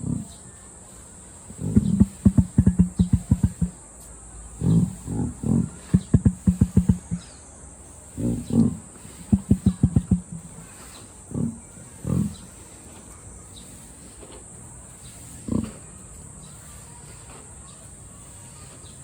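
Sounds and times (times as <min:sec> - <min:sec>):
emu low grunts: 0:00.0 - 0:00.4, 0:01.5 - 0:03.8, 0:04.5 - 0:07.2, 0:08.1 - 0:12.6, 0:15.4 - 0:15.8.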